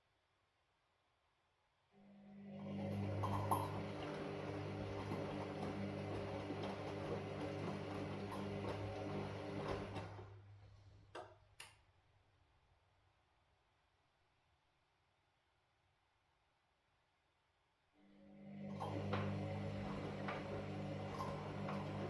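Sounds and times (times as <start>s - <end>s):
washing machine motor running: 2.5s - 10.6s, 18.4s - 22.0s.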